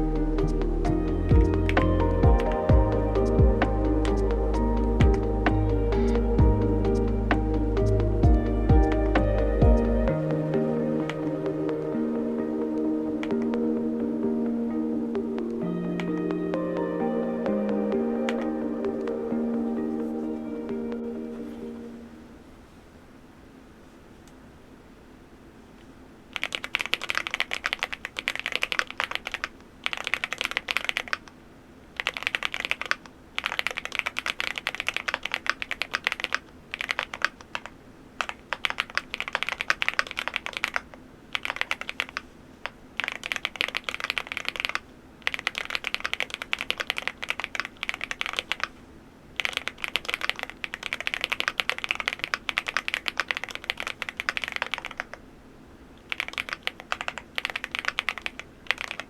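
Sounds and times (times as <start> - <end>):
typing on mechanical keyboard: 26.4 - 31.4, 32.0 - 48.8, 49.4 - 55.2, 56.1 - 59.0.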